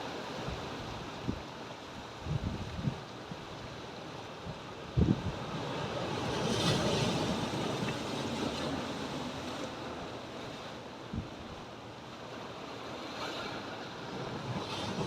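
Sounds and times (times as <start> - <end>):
waves breaking on rocks: 4.9 - 10.7, 12.5 - 15.0.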